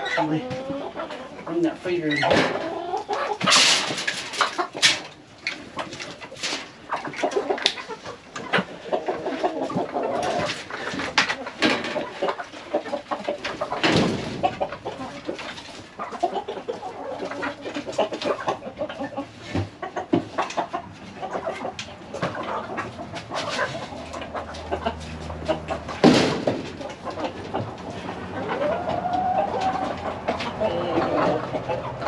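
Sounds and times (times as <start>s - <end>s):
hens clucking: 0.0s - 32.0s.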